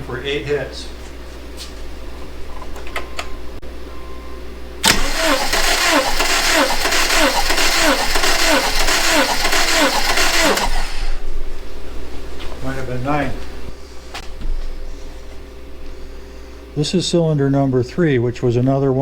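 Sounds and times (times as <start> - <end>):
engine cranking by starter: 4.8 - 11.3.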